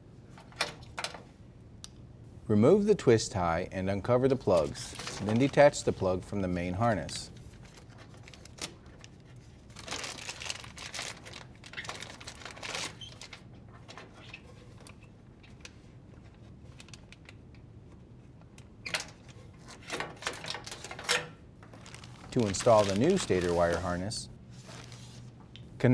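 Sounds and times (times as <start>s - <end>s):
plastic crinkling: 4.4s - 6.1s, 7.0s - 17.4s, 19.0s - 25.6s.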